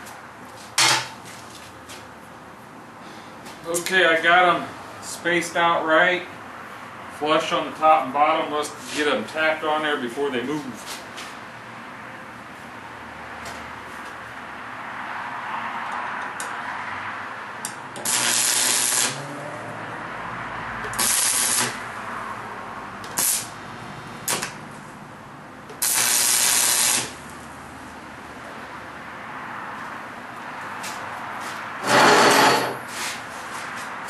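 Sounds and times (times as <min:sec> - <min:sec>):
arc welder hissing: 0:18.0 - 0:19.3, 0:20.9 - 0:21.8, 0:23.1 - 0:23.6, 0:25.8 - 0:27.2.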